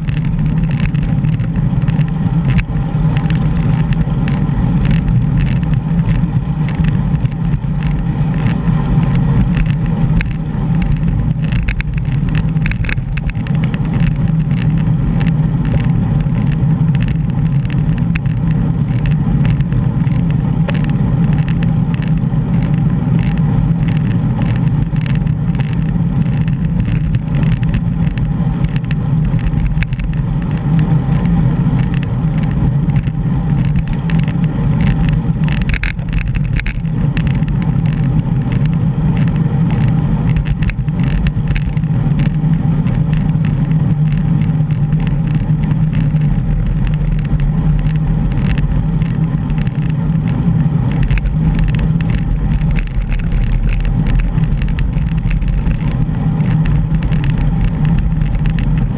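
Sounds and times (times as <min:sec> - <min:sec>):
bike clicks and rattles: 0:00.0 - 0:58.9
wind and road rumble: 0:00.0 - 0:58.9.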